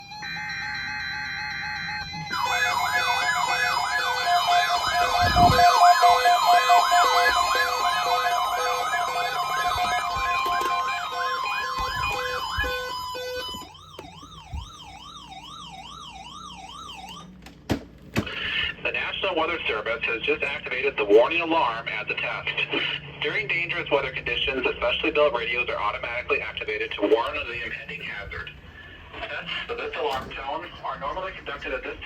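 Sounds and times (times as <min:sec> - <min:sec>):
siren-like sweeps: 0:00.0 - 0:17.3
slow warbling alarm: 0:00.0 - 0:17.4
steady alarm tone: 0:00.0 - 0:17.4
pulsed beeps: 0:01.8 - 0:15.0.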